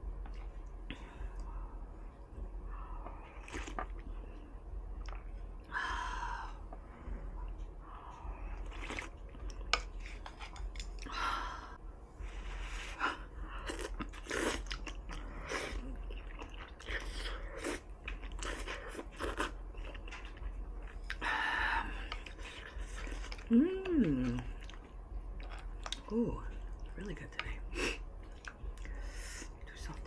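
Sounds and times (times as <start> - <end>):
close-miked chewing: 3.0 - 4.4, 7.4 - 11.2, 13.5 - 29.2.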